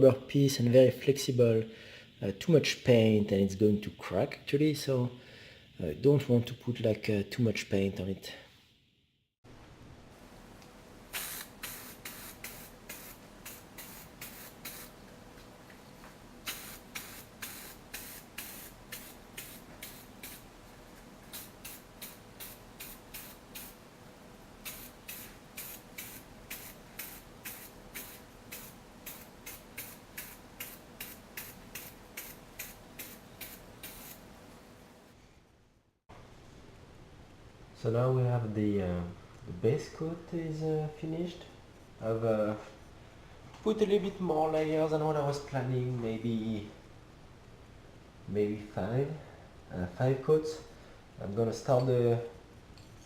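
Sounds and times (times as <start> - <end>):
aerosol can spraying: 11.1 - 15.0, 16.4 - 20.6, 21.2 - 23.9, 24.6 - 34.3.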